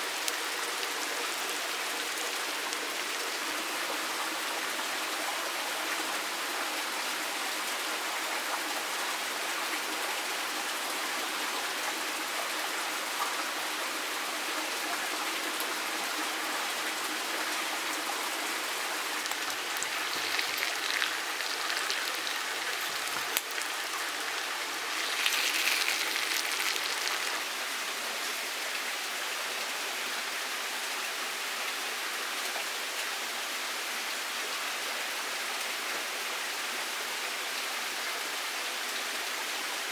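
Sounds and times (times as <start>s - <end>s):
running water rushing: 16.9s - 28.8s.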